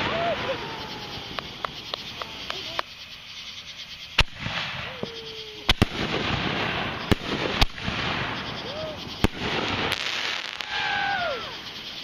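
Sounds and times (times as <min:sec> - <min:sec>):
fireworks bangs: 0:00.0 - 0:03.0, 0:04.2 - 0:11.9
crackling fizz: 0:08.6 - 0:12.0.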